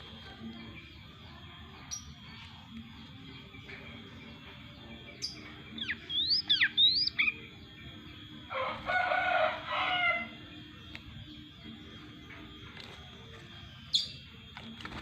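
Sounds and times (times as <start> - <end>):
bird singing whistled notes: 4.8 - 7.6.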